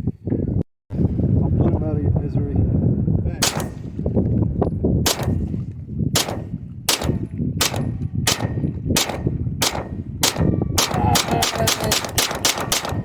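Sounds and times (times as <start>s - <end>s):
wind buffeting microphone: 0.0s - 13.0s
pistol shots: 3.4s - 4.1s, 5.1s - 5.6s, 6.2s - 13.0s.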